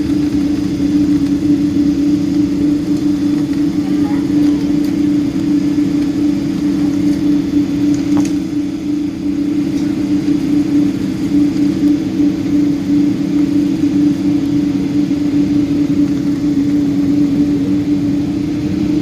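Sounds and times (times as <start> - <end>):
airliner cabin engine drone: 0.0 - 19.0.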